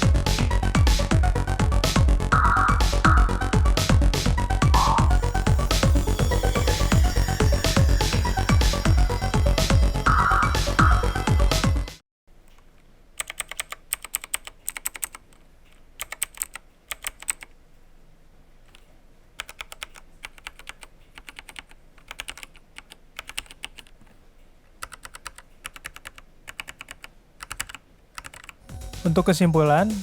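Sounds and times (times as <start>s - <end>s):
mechanical keyboard typing: 12.5s - 15.4s, 16.0s - 17.5s, 18.6s - 24.1s, 24.8s - 28.6s.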